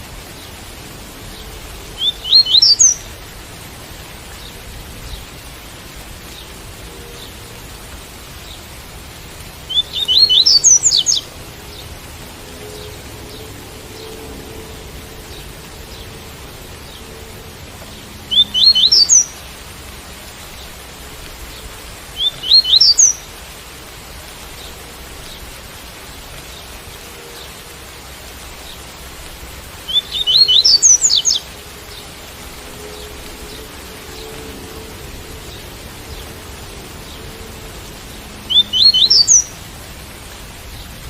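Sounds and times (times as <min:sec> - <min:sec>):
rain hissing: 0:00.0 - 0:41.0
bird singing quick rising notes: 0:01.3 - 0:03.0, 0:09.7 - 0:11.8, 0:18.3 - 0:19.4, 0:22.2 - 0:23.2, 0:29.9 - 0:31.5, 0:38.4 - 0:39.6.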